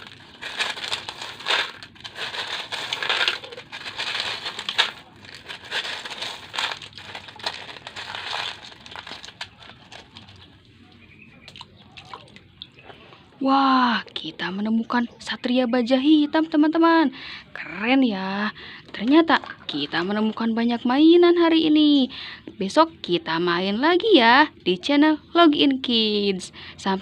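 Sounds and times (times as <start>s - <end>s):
gravel crunching and rattling: 0.0s - 11.2s.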